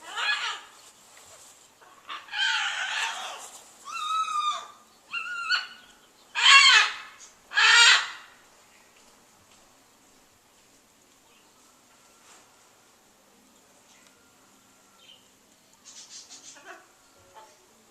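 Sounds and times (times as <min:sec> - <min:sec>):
large bird crying: 0:00.0 - 0:00.8, 0:01.8 - 0:08.4.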